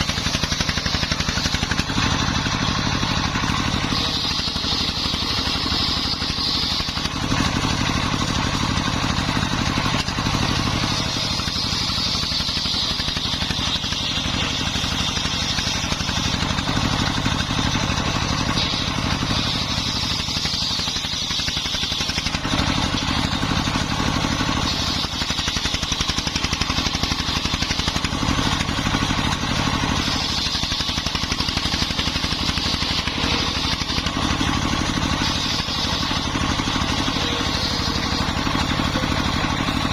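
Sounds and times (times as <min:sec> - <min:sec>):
diesel engine running: 0:00.0 - 0:39.9
saw blade whining through timber: 0:00.0 - 0:39.9.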